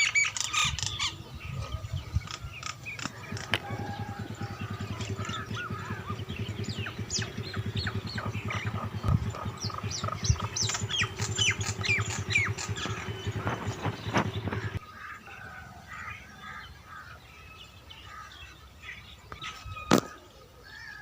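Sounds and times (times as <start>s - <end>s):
birds chirping and squawking: 0.0s - 21.0s
steady low hum: 1.3s - 15.2s.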